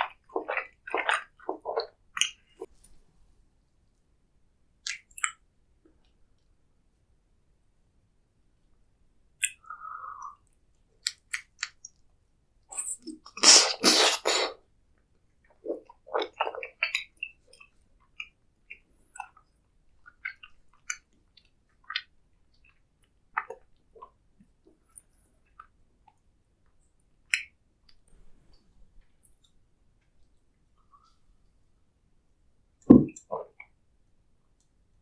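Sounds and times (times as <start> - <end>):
mouth clicks: 9.4 - 11.8
bites: 12.7 - 14.6.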